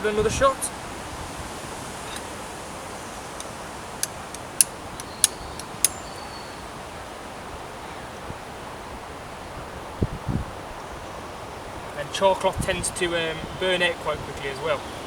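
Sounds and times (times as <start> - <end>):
steady background hiss: 0.0 - 15.0
flint and steel striking: 3.3 - 6.3.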